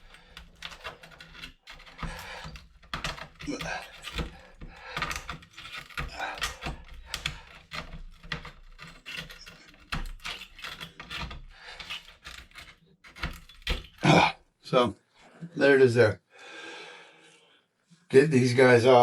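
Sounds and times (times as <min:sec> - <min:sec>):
hand tool scraping and prying: 0:00.0 - 0:14.3.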